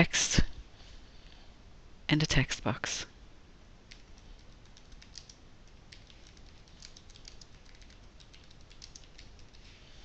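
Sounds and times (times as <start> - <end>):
typing on computer keyboard: 3.9 - 9.6.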